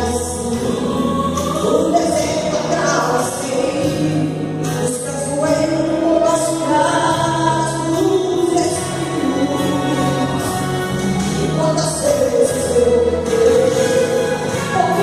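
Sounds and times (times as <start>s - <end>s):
backing music track: 0.0s - 15.0s
woman singing gospel song: 0.0s - 15.0s.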